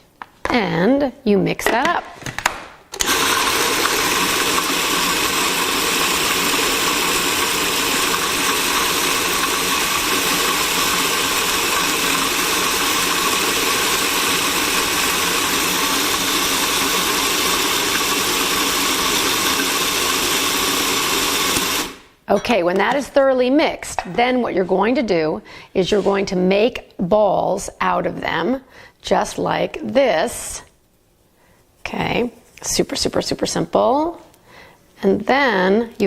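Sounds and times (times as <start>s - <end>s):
food processor motor whirring: 3.0s - 22.1s.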